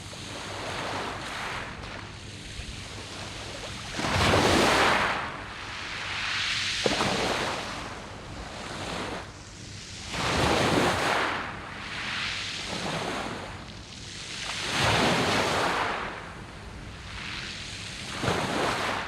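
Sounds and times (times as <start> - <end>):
waves washing over pebbles: 0.4 - 9.3, 10.0 - 11.5.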